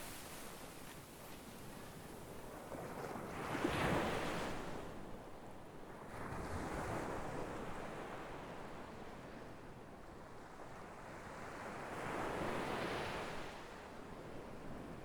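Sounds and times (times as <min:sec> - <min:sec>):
sea waves breaking on shore: 0:00.0 - 0:04.7.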